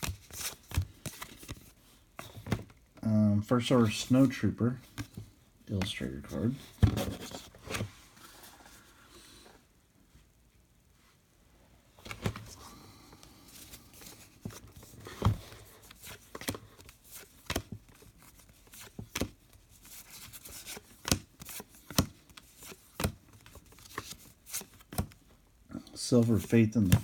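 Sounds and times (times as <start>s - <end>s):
trading cards rustling: 0.0s - 2.8s, 12.0s - 25.2s, 26.1s - 27.0s.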